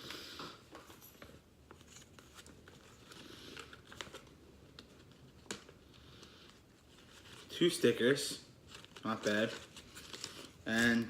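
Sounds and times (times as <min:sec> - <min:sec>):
packaging rustling: 0:08.6 - 0:11.0.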